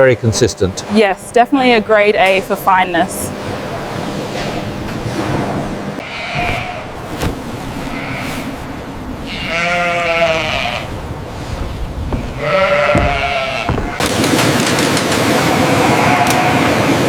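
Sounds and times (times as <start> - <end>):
steady background noise: 0.0 - 17.0
sheep bleating: 6.0 - 6.9, 9.2 - 11.0, 12.2 - 14.0, 15.7 - 16.8.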